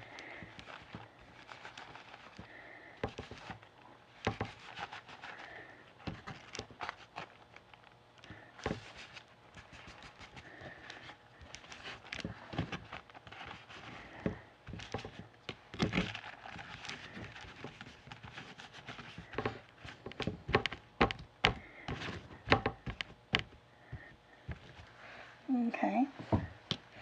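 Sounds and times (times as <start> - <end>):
paper rustling: 0.0 - 25.0
hands tapping on wood: 17.2 - 24.8.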